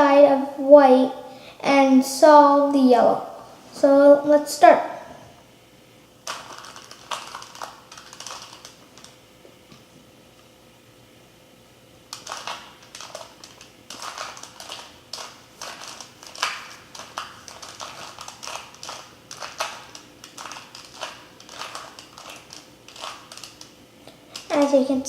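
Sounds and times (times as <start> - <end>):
puzzle cube clicking as twisted: 12.1 - 23.7.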